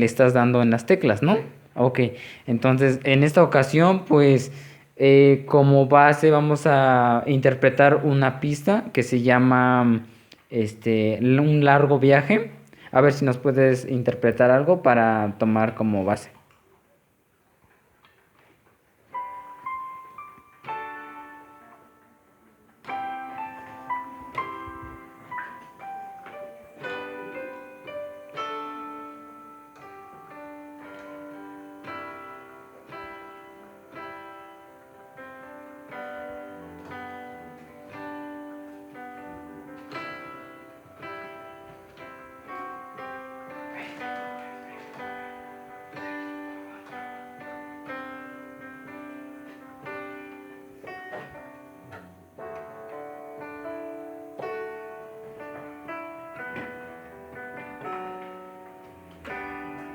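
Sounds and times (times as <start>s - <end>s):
slow electronic keyboard piece: 11.2s - 59.9s.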